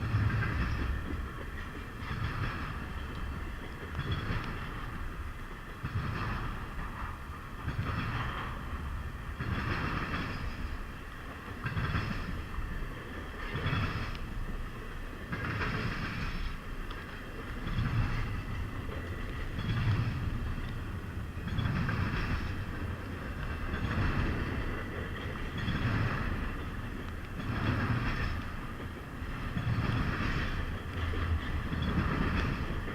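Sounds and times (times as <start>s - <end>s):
freight train rolling past: 0.0s - 32.9s.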